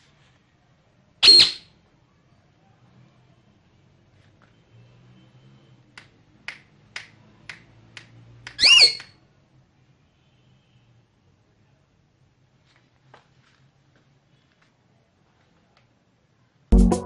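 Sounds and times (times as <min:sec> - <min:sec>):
parakeet call: 0:01.2 - 0:01.7, 0:08.5 - 0:09.2.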